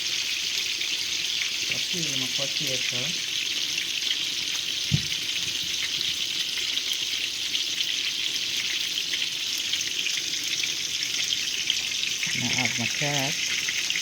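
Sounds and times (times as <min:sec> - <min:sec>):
chicken sizzling in a pot: 0:00.0 - 0:14.0
low thump: 0:04.9 - 0:05.2.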